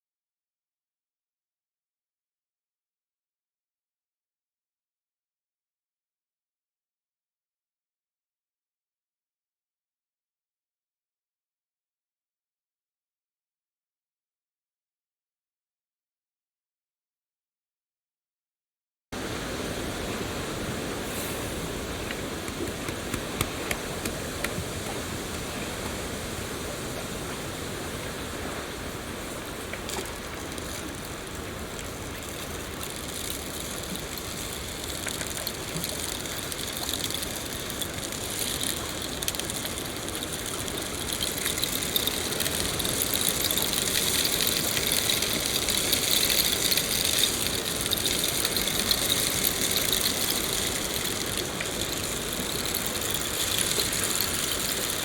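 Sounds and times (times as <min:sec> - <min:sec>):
steady rain: 0:19.2 - 0:55.0.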